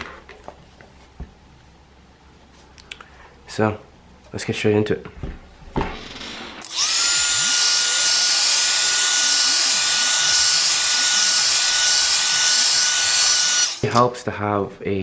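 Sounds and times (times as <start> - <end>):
heat gun fan whine: 6.6 - 14.1.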